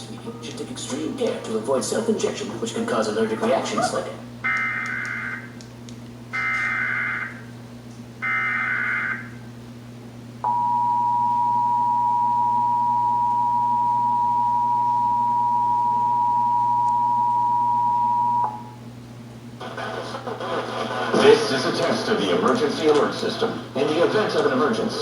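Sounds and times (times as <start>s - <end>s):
two-tone attention signal: 10.4s - 18.8s.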